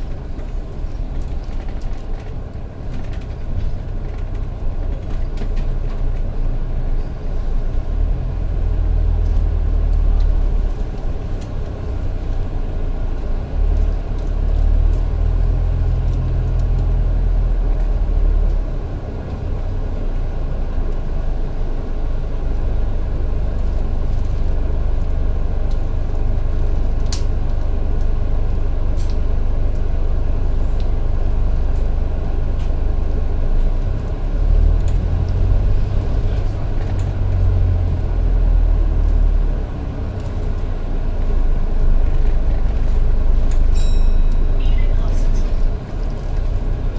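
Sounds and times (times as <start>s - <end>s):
bus engine and road rumble: 0.0s - 46.9s.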